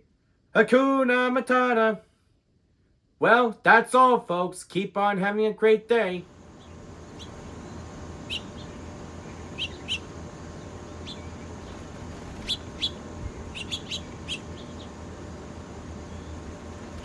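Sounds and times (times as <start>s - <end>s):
birds chirping: 6.2s - 17.0s
steady low hum: 6.2s - 17.0s.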